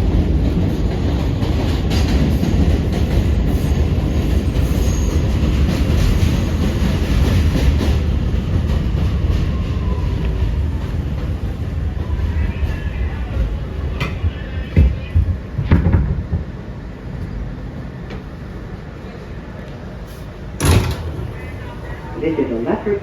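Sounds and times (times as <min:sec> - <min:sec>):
steel wheels rumbling on rail: 0:00.0 - 0:23.0
track clicks: 0:20.6 - 0:22.0.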